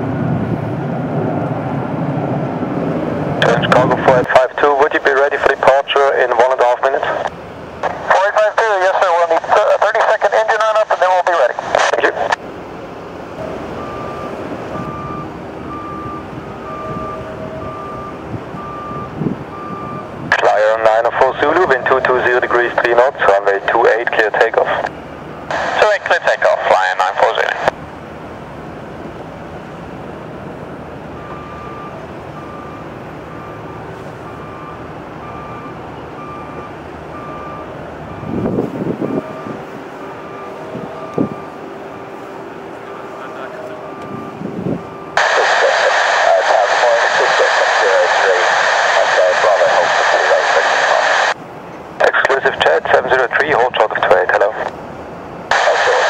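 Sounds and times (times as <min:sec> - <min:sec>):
airport and engine rumble: 0:00.0 - 0:56.0
reversing alarm beeping: 0:13.4 - 0:20.2, 0:21.2 - 0:22.5, 0:31.1 - 0:51.4.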